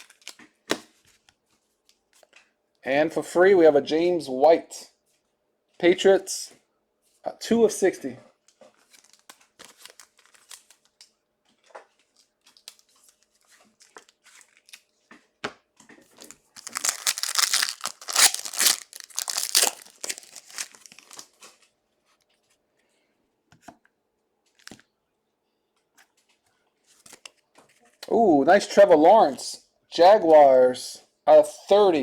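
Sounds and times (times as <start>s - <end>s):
plastic packaging crinkling: 0.0s - 0.4s, 8.8s - 11.2s, 11.9s - 15.0s, 16.1s - 21.7s.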